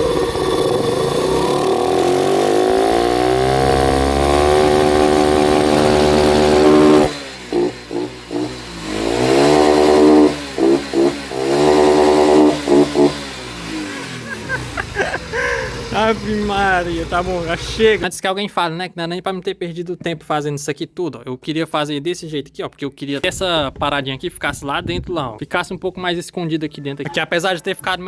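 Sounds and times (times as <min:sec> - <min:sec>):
engine stuttering at rev limiter: 0:00.0 - 0:18.0
motorcycle engine revving: 0:00.0 - 0:18.0.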